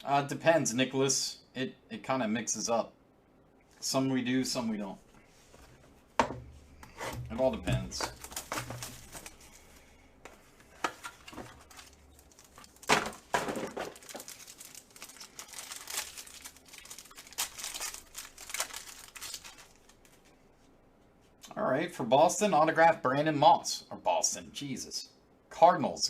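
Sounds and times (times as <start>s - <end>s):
card packaging crinkling: 7.3s - 9.7s, 10.7s - 20.3s.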